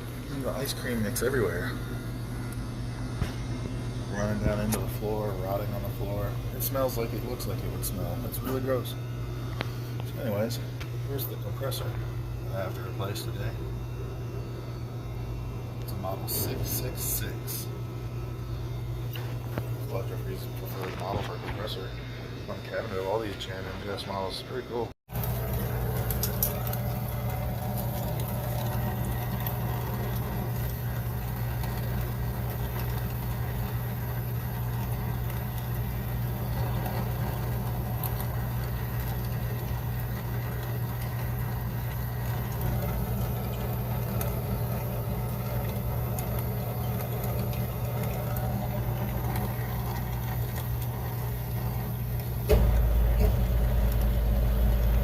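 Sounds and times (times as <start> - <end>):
low machine hum: 0.0 - 55.0
deep rumble: 52.5 - 55.0.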